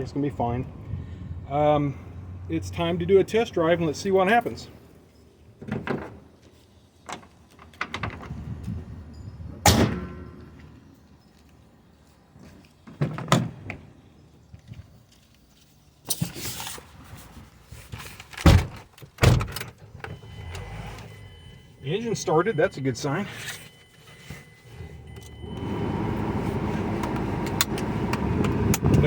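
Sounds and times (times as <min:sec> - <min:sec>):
car body slams and thunks: 0:09.6 - 0:10.4, 0:18.4 - 0:19.5.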